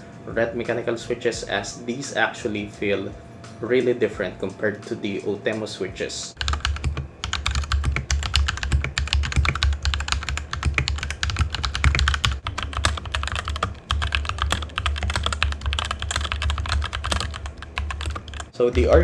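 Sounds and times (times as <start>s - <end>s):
fast typing on mechanical keyboard: 6.4s - 18.5s.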